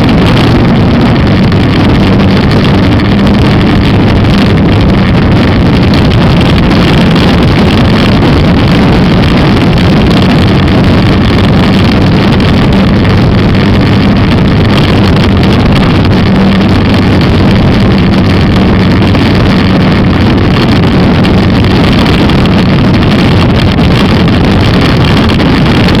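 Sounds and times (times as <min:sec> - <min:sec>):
motorcycle engine running: 0:00.0 - 0:26.0
wind noise on microphone: 0:00.0 - 0:26.0.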